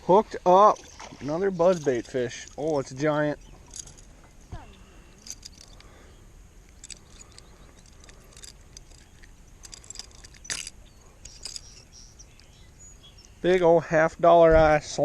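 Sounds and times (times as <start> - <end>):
fishing reel clicks and rattles: 6.7 - 12.0.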